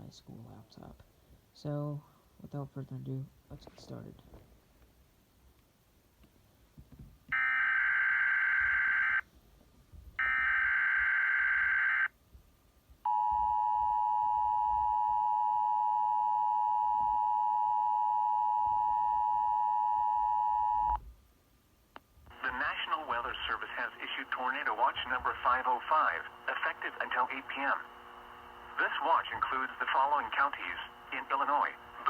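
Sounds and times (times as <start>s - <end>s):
steady alarm tone: 7.4s - 9.2s, 10.2s - 12.1s, 13.1s - 21.0s.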